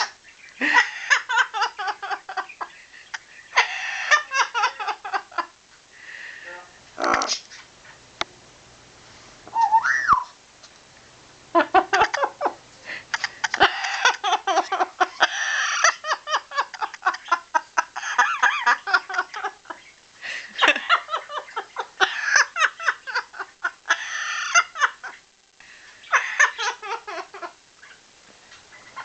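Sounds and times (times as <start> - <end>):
parrot imitating laughter: 11.6 - 19.8, 26.0 - 27.6.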